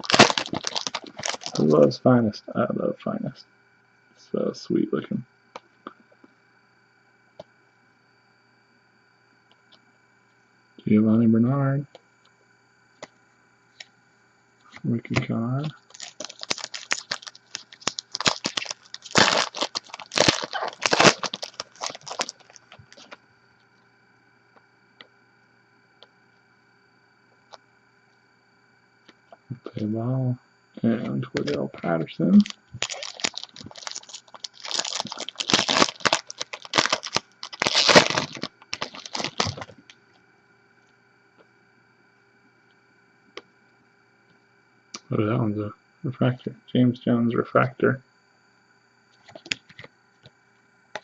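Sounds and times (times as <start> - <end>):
wrapper tearing and crinkling: 0.0 - 1.8, 15.7 - 23.2, 32.4 - 39.9.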